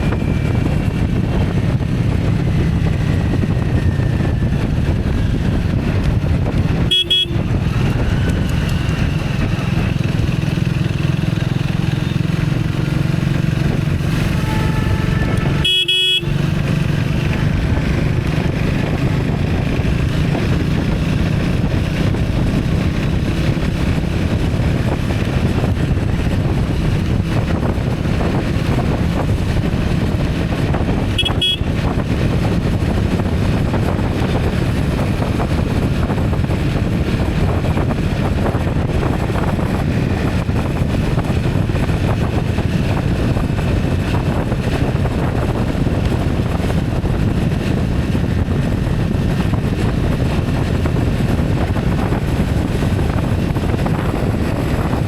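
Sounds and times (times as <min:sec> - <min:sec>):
moving vehicle rumble: 0:00.0 - 0:55.0
wind on microphone: 0:00.0 - 0:55.0
faint horns honking: 0:06.8 - 0:07.6, 0:14.1 - 0:16.7, 0:31.1 - 0:31.9.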